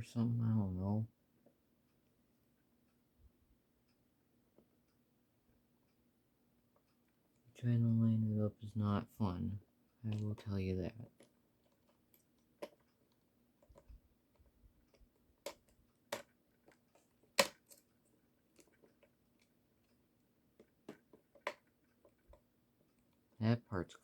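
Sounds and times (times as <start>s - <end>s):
faint steady hum: 0.0s - 24.0s
plastic parts clicking and knocking: 10.1s - 23.4s.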